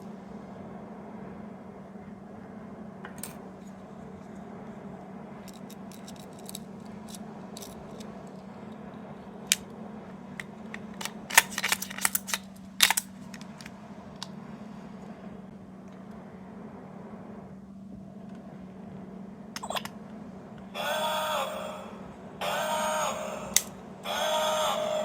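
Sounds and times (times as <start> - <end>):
low hum: 0.0 - 25.0
plastic pieces clicking: 5.4 - 8.2, 10.7 - 14.3.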